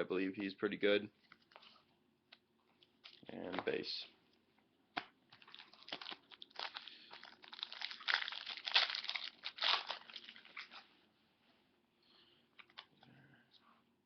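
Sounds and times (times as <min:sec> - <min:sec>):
wrapper crinkling: 0:05.3 - 0:10.8.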